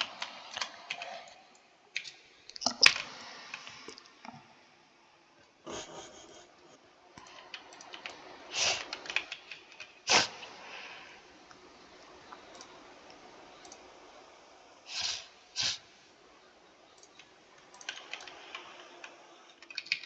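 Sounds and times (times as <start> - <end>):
computer keyboard keystrokes: 7.2 - 8.2, 8.8 - 10.0, 17.0 - 20.0.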